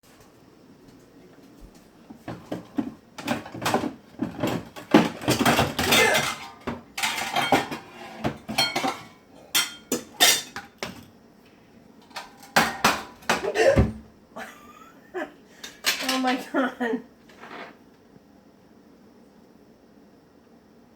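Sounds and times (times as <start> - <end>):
dishes and cutlery clattering: 2.3 - 11.1, 12.0 - 13.9, 15.6 - 16.2.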